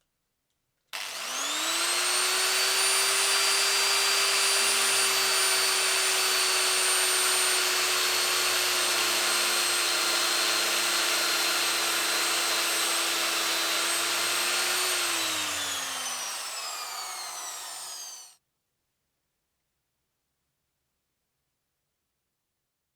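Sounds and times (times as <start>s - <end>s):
angle grinder whining: 1.0s - 18.4s.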